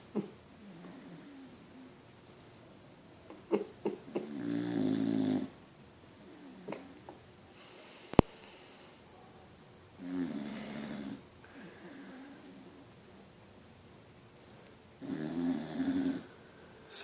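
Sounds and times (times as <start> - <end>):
person snoring loudly: 4.2 - 5.5, 10.0 - 11.2, 15.0 - 16.3.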